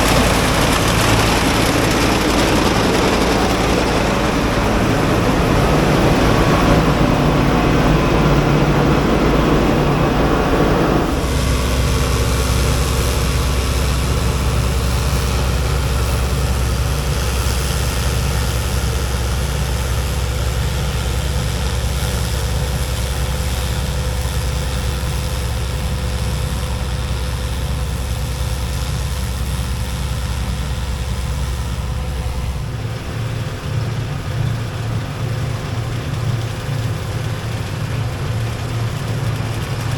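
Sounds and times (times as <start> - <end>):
rushing noise: 0.0 - 16.8
heavy vehicle engine running: 0.0 - 39.9.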